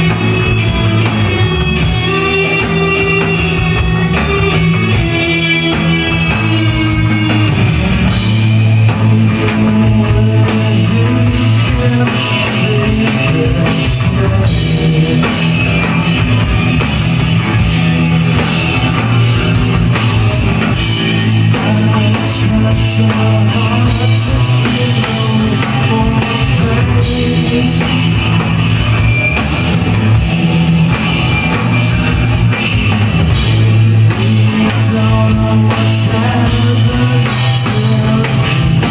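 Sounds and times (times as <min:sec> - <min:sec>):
rock music: 0:00.0 - 0:38.9
person singing: 0:08.8 - 0:16.0, 0:21.3 - 0:28.4, 0:34.1 - 0:38.9.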